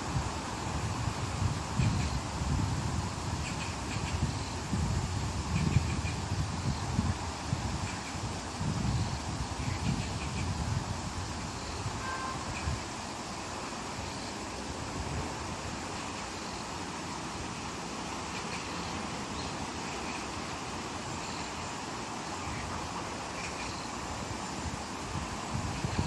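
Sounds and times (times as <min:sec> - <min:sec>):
wind rustling leaves: 0:00.0 - 0:26.0.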